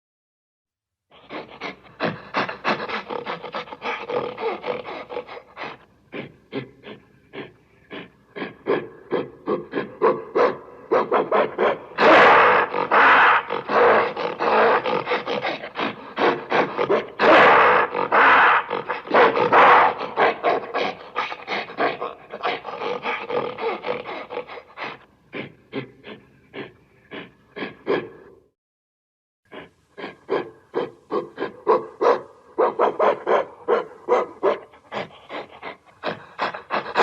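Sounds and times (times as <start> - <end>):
gorilla roars: 1.1 - 28.4.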